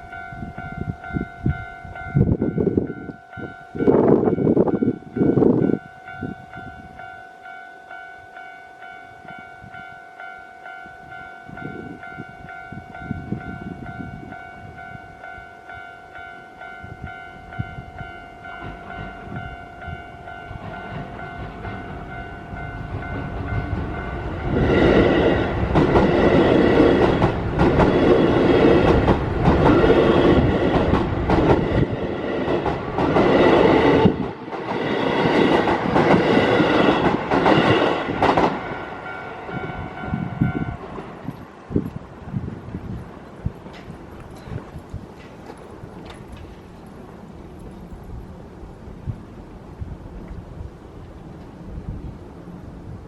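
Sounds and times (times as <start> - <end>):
level-crossing warning bell ringing: 0.0 - 41.5
train wheels clattering over rails: 20.6 - 39.6, 42.8 - 48.1.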